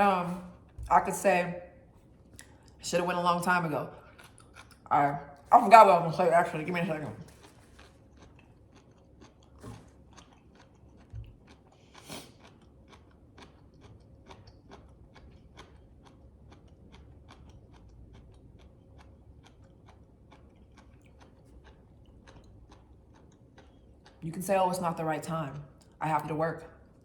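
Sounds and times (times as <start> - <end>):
person chewing food: 1.8 - 2.8, 4.0 - 5.5, 7.2 - 24.2.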